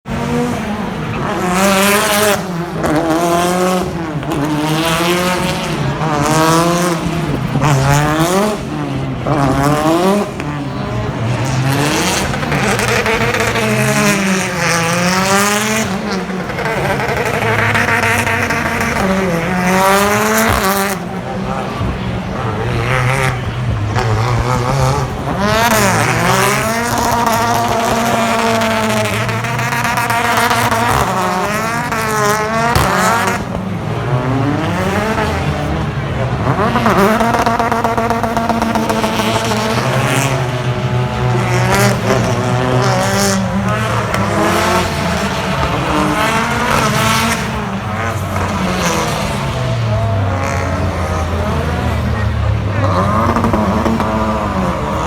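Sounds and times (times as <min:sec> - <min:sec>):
race car engines revving: 0:00.0 - 0:55.0.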